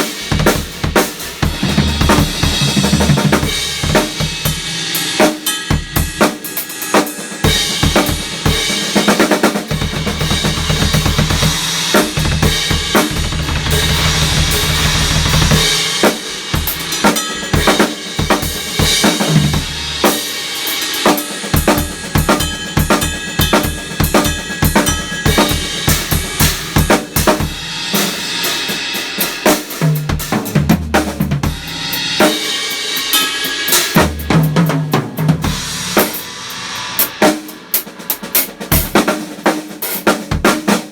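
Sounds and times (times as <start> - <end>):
rapid low drum strokes: 0.0 - 5.2, 7.4 - 20.4, 21.5 - 39.5
drum kit groove: 0.0 - 40.9.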